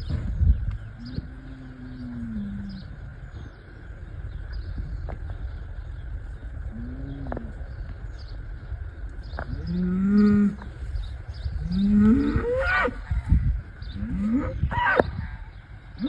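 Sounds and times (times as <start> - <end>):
low rumble: 0.0 - 16.0
bull bellowing: 9.5 - 10.7, 11.6 - 13.2, 13.9 - 15.2.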